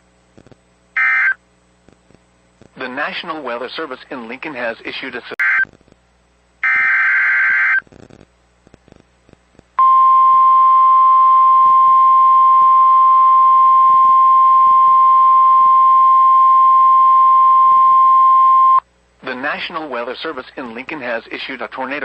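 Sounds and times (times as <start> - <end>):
buzzy data tone: 1.0 - 1.4, 6.6 - 8.2
steady warning alarm tone: 6.6 - 7.8.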